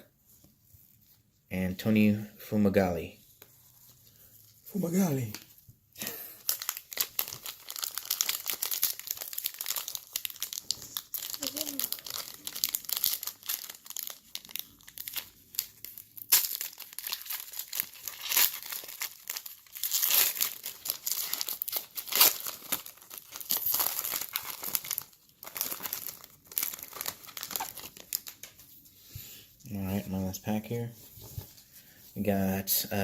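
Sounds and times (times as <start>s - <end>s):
foil wrapper crinkling and tearing: 4.8s - 28.8s.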